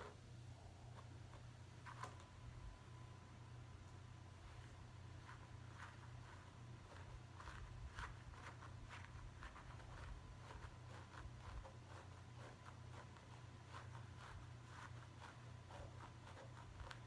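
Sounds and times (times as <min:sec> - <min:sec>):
scratching on hair and scalp: 0:00.0 - 0:02.8, 0:03.8 - 0:17.0
low steady hum: 0:00.0 - 0:17.0.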